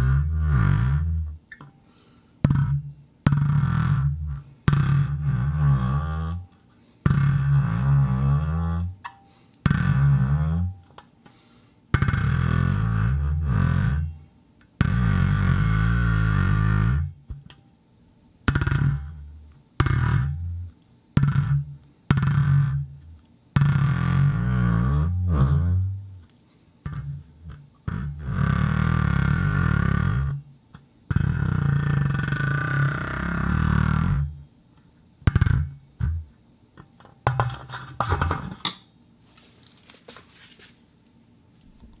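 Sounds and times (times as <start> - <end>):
ball knocking on wooden box: 37.0 - 38.8.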